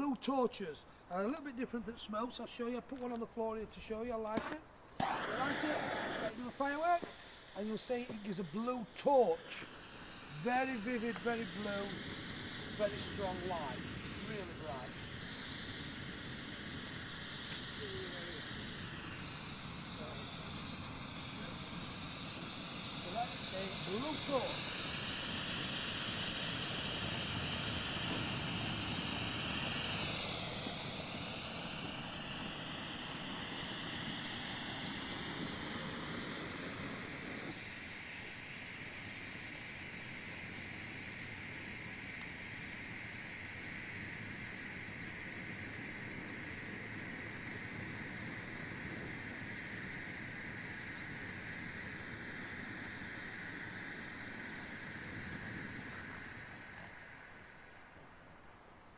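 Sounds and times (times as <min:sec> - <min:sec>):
flare burning with a hiss: 0:00.0 - 0:58.9.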